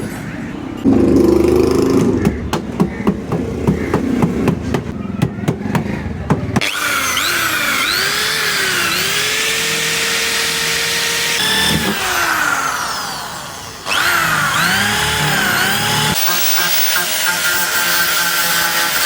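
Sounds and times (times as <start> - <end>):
power tool cutting sheet metal: 6.6 - 19.0.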